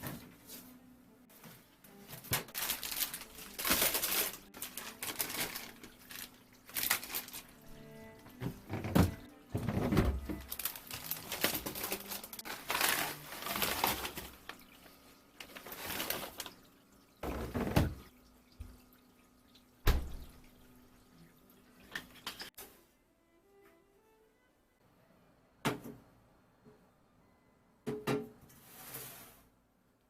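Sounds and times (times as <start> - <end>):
water running into a sink: 2.6 - 22.5.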